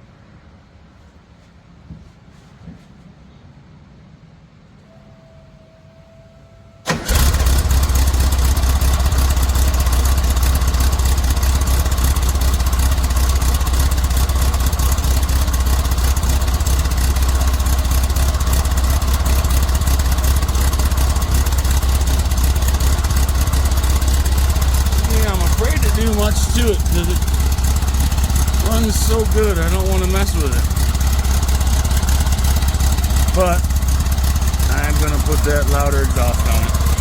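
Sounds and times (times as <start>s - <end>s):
car engine starting and idling: 6.6s - 37.0s.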